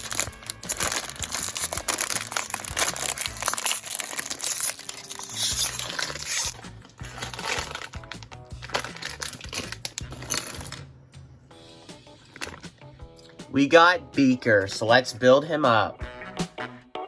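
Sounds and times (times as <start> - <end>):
plastic bag crinkling: 0.0 - 10.8
background music with bass: 0.0 - 17.0.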